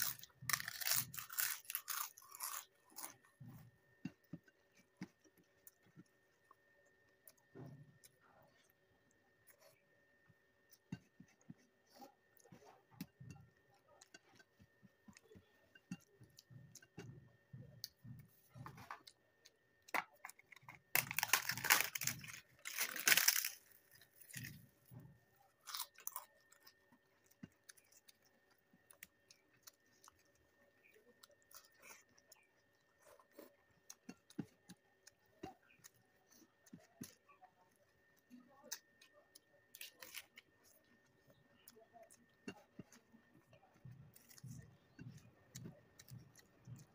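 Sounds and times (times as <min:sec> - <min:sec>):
crisp crunching: 0:00.0 - 0:03.3, 0:19.9 - 0:24.7
person chewing food: 0:00.0 - 0:46.9.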